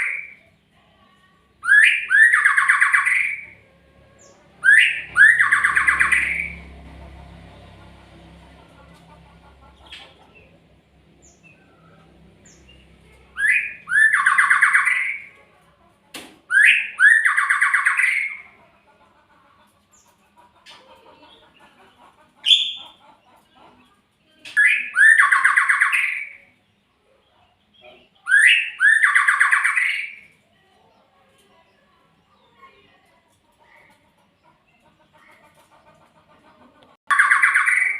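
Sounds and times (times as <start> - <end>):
songbird calling: 1.6 - 3.5, 4.2 - 6.6, 13.4 - 15.3, 16.5 - 18.4, 28.0 - 30.2.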